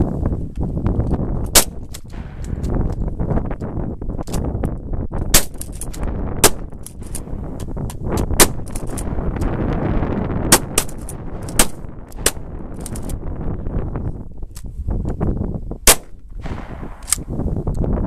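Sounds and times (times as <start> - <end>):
low rumble: 0.0 - 18.0
shotguns firing: 1.5 - 3.2, 5.3 - 7.6, 8.2 - 13.1, 15.8 - 17.3.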